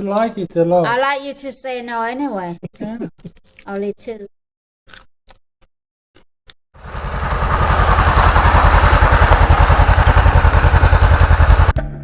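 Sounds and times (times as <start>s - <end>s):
small engine running: 6.8s - 11.9s.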